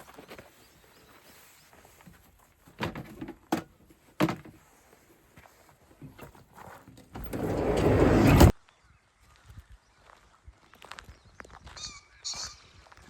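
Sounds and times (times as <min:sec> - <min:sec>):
footsteps through vegetation: 0:00.0 - 0:02.8.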